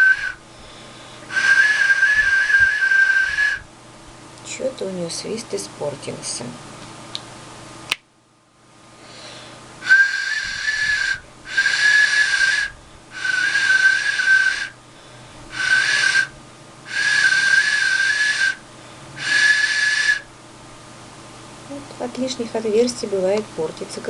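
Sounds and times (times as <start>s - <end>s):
clay whistle breathy notes: 0.0s - 3.6s, 9.0s - 18.6s, 19.2s - 20.3s.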